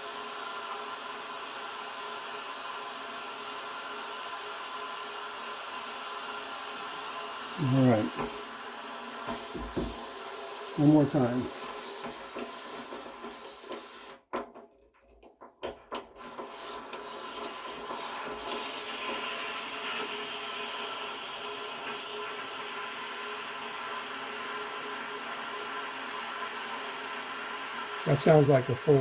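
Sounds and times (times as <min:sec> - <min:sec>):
water sputtering and rushing from drain: 0:06.2 - 0:14.2, 0:15.9 - 0:29.0.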